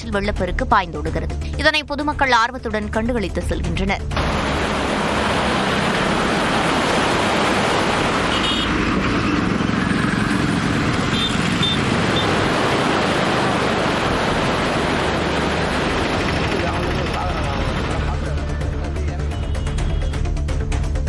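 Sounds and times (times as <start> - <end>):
river rushing: 4.2 - 16.8.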